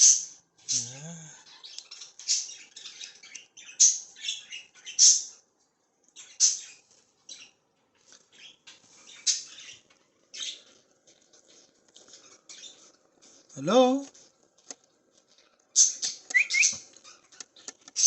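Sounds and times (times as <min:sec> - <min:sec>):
budgerigars chirping and squawking: 0:01.5 - 0:05.4, 0:06.2 - 0:07.6, 0:08.3 - 0:10.6, 0:15.8 - 0:18.0.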